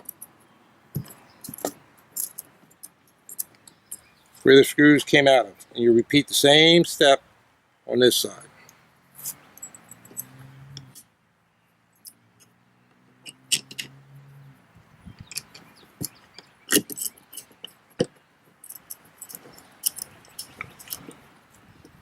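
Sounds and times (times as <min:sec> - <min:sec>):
metal bolts clicking and clinking: 0:00.0 - 0:00.4, 0:01.0 - 0:05.7, 0:09.2 - 0:11.1, 0:13.2 - 0:14.0, 0:15.2 - 0:21.3.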